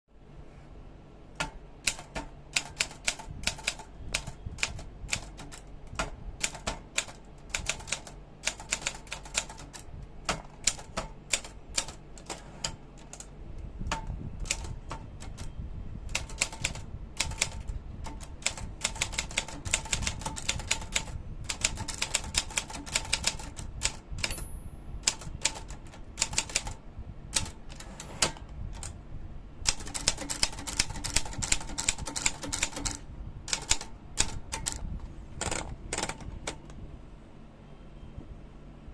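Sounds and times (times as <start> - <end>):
typewriter key strikes: 1.4 - 13.2, 16.1 - 26.8, 29.7 - 34.8.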